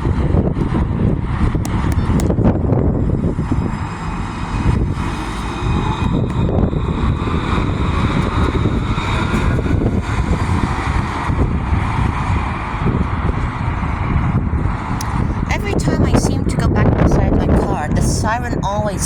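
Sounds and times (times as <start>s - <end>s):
road traffic rumble: 0.0s - 19.0s
wind on microphone: 0.0s - 19.0s
faint rising whine: 1.8s - 16.4s.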